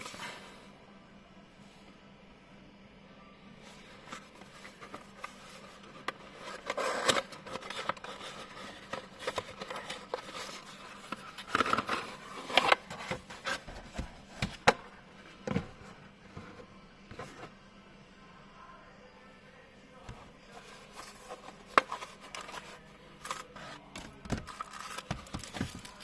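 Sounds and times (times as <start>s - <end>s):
packaging rustling: 4.0s - 14.6s, 20.5s - 26.0s
scraping and clicks of case handling: 4.0s - 14.8s, 20.5s - 26.0s.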